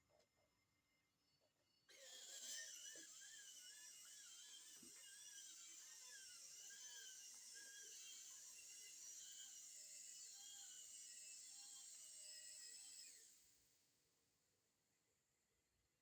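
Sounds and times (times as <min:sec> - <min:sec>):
robot vacuum motor whining: 0:01.9 - 0:13.2.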